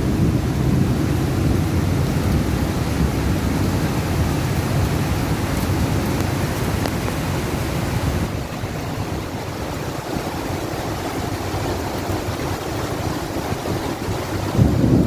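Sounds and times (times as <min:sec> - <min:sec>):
heavy rain in strong wind: 0:00.0 - 0:15.0.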